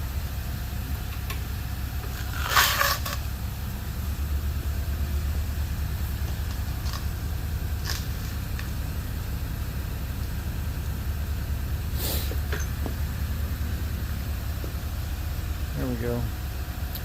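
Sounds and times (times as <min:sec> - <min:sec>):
low mechanical hum: 0:00.0 - 0:17.0
burst of hiss: 0:11.9 - 0:12.5.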